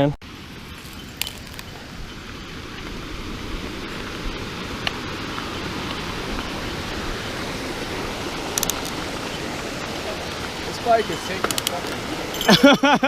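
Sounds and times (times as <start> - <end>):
wind and tyres rushing: 0.2 - 13.0
bike clicks and rattles: 8.5 - 9.0, 11.2 - 12.7.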